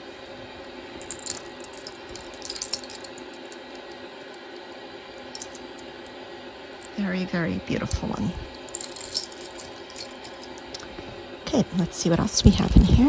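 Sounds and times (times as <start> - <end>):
low room hum: 0.0 - 13.0
metal necklace clinking: 1.0 - 4.0, 5.3 - 6.1, 7.8 - 10.8, 12.1 - 13.0.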